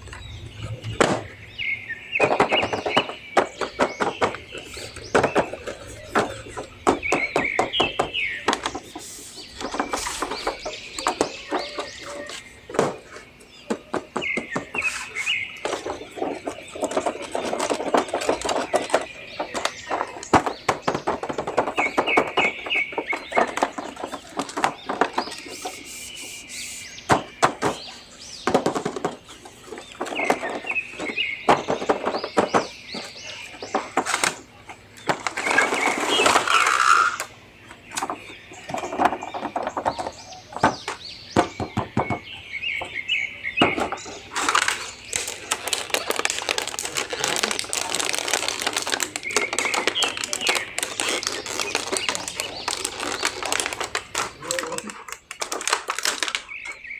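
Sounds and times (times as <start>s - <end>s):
plastic packaging crinkling: 44.3s - 56.8s.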